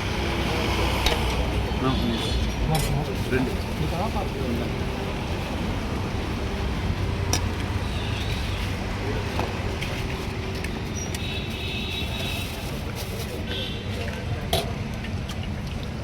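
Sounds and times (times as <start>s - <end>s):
road traffic rumble: 0.0s - 16.0s.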